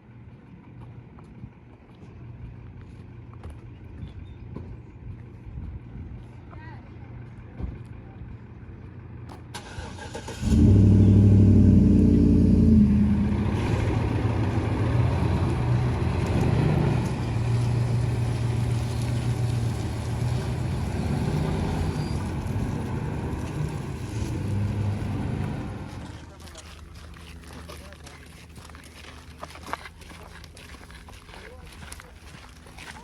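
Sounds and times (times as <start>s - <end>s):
car engine starting and idling: 8.9s - 26.3s.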